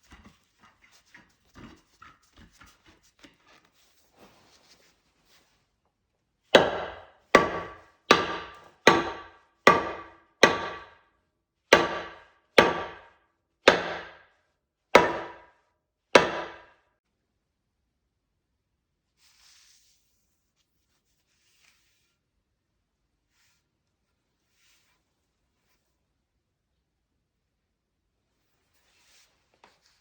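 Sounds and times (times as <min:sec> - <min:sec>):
hammer striking wood: 0:06.5 - 0:11.0, 0:11.7 - 0:14.3, 0:15.0 - 0:15.5, 0:16.2 - 0:16.8.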